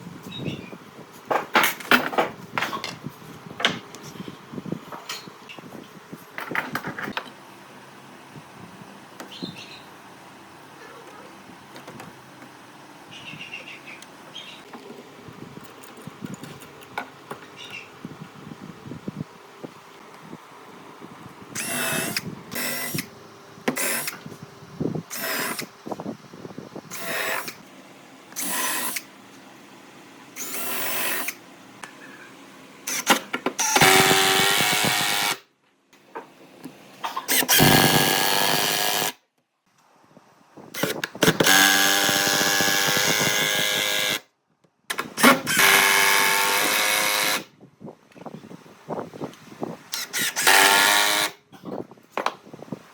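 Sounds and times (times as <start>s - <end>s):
power tool whining on wood: 32.9s - 35.4s, 37.3s - 39.2s, 40.8s - 44.2s, 45.0s - 47.5s, 49.9s - 51.4s.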